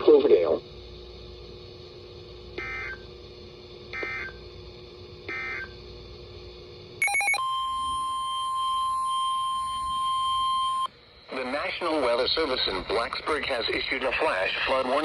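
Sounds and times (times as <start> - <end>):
faint hum: 0.0 - 15.0
steady warning alarm tone: 2.6 - 3.0, 3.9 - 4.4, 5.3 - 5.8, 7.0 - 10.9.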